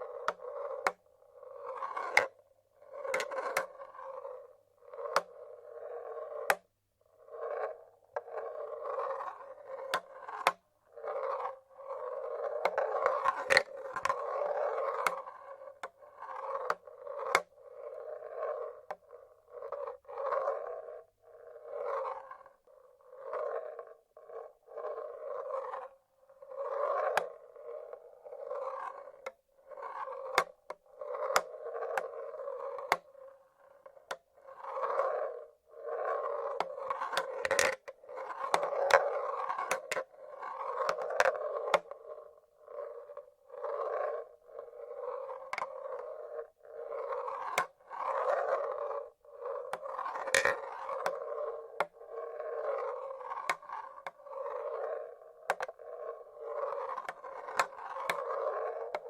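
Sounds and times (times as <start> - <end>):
marbles rolling on wooden tracks: 0.0 - 6.6, 7.2 - 59.0
marbles clicking against wood: 3.1 - 3.7, 13.2 - 14.2, 36.5 - 39.0, 49.6 - 51.2.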